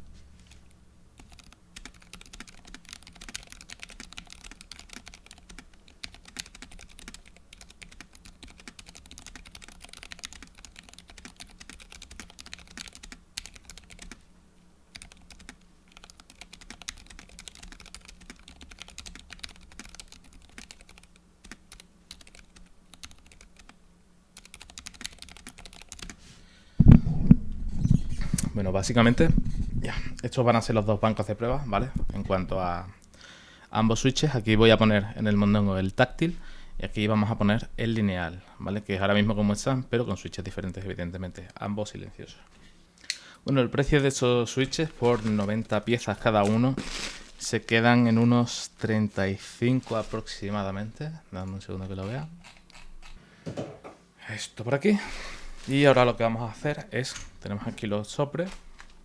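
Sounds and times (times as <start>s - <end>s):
mechanical keyboard typing: 1.2s - 14.2s, 14.9s - 23.8s, 24.4s - 26.2s
person speaking: 26.8s - 33.1s, 33.7s - 42.5s, 43.4s - 52.5s, 54.2s - 58.7s.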